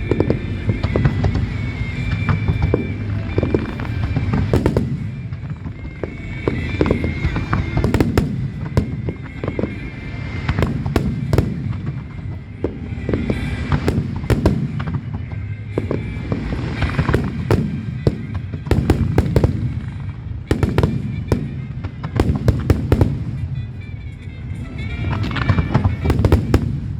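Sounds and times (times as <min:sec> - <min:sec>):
fireworks crackling hiss: 0:00.0 - 0:26.9.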